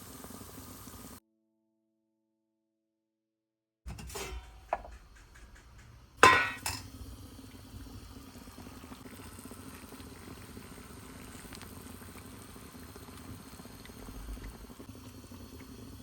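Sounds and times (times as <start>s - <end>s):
dishes clinking and knocking: 3.9s - 6.9s
sharp ringing clank: 6.2s - 6.8s.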